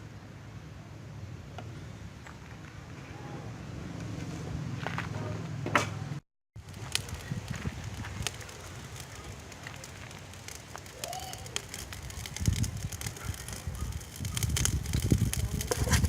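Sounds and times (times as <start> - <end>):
fire crackling and popping: 6.6 - 16.0.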